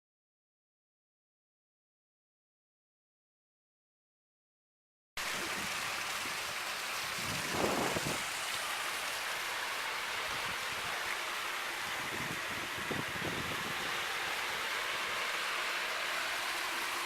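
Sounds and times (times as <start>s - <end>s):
waterfall splashing into pool: 5.2s - 17.0s.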